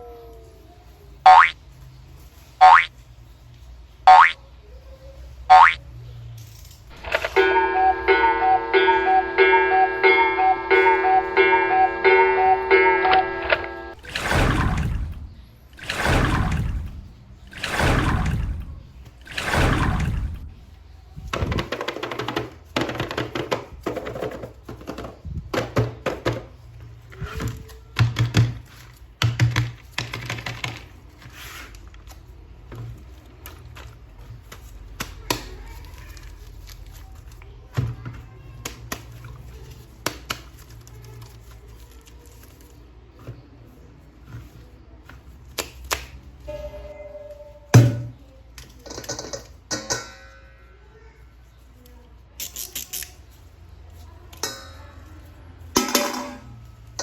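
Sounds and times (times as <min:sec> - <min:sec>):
plastic toy parts clicking: 0:52.4 - 0:53.2.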